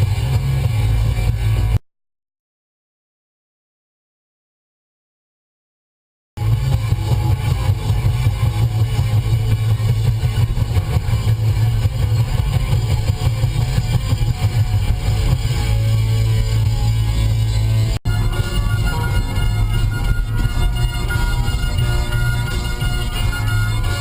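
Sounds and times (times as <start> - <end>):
guitar music: 6.4 - 24.0
low rumble: 6.4 - 24.0.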